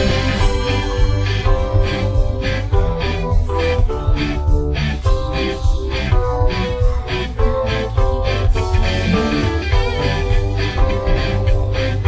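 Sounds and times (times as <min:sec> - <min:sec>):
guitar-led backing track: 0:00.0 - 0:12.0
pulsing bass: 0:00.0 - 0:12.0.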